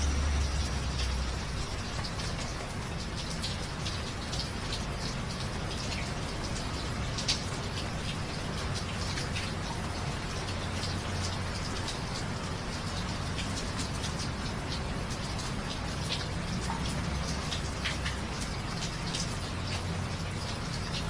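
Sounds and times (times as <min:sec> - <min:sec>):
low steady hum: 0:00.0 - 0:02.6
rain falling: 0:00.0 - 0:21.0
raindrops splashing: 0:00.0 - 0:21.0.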